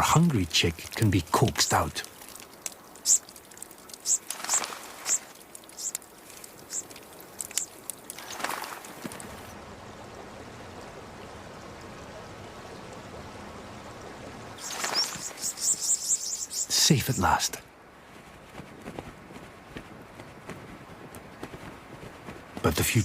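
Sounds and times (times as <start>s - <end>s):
faint steady hiss: 0.0s - 23.0s
finches chirping: 3.0s - 3.2s, 4.0s - 8.5s, 14.6s - 17.5s.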